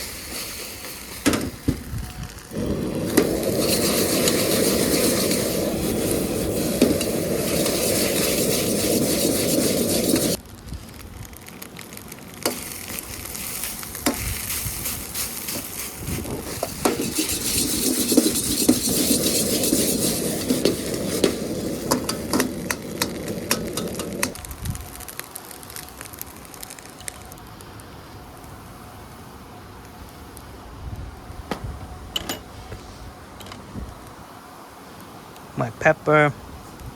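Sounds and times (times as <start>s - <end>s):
rice sizzling in a wok: 0.0s - 28.9s
spatula scraping a wok: 2.6s - 10.4s, 13.3s - 24.3s.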